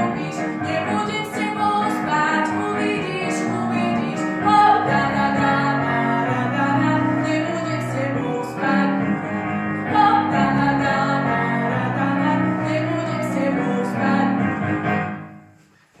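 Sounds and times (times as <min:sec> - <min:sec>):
woman singing: 0:00.0 - 0:09.2, 0:09.9 - 0:14.6
musical accompaniment: 0:00.0 - 0:16.0.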